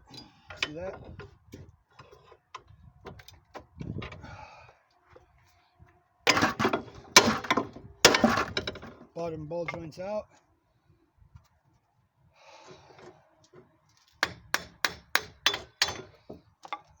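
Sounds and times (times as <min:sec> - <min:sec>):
metal clanking and scraping: 0:06.3 - 0:09.1.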